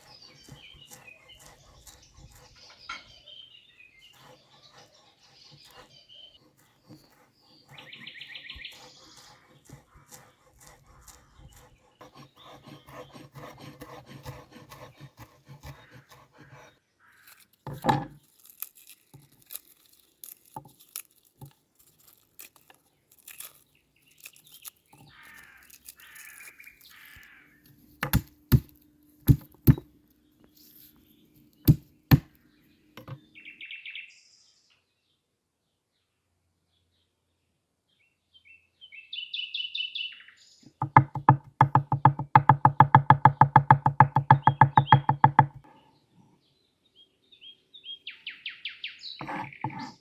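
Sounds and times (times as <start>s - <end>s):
sharp knocks and clicks: 28.0s - 28.7s, 33.0s - 33.2s, 40.8s - 45.6s.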